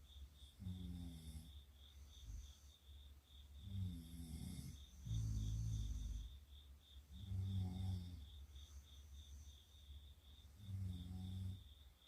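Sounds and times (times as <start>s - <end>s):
person snoring faintly: 0.5s - 2.8s, 3.6s - 6.4s, 7.1s - 9.6s, 10.4s - 11.8s.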